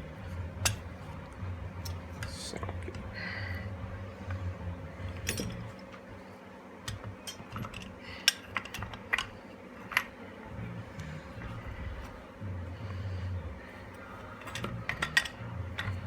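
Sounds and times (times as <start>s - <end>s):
steel tools clinking: 5.0s - 6.0s, 6.8s - 10.2s, 13.9s - 16.0s.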